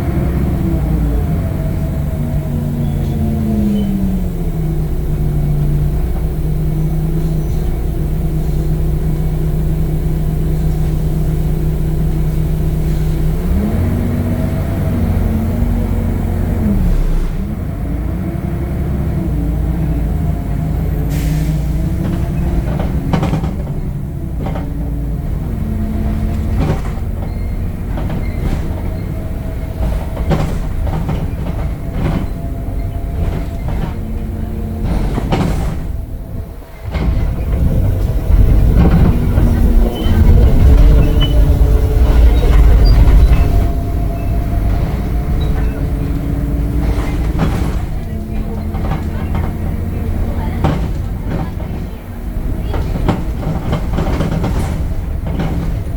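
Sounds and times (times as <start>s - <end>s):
bus engine shifting gears: 0.0s - 55.9s
bus knocks and rattles: 0.0s - 55.9s.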